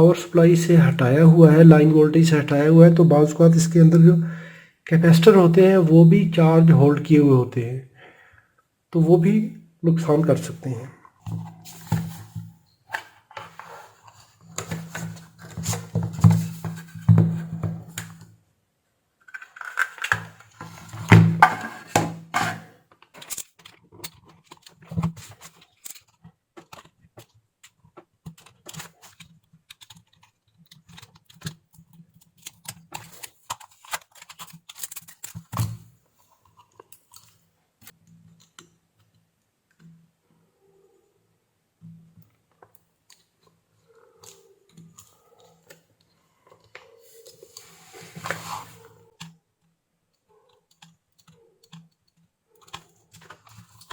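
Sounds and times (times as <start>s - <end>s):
plastic case clicking and cracking: 19.3s - 35.8s.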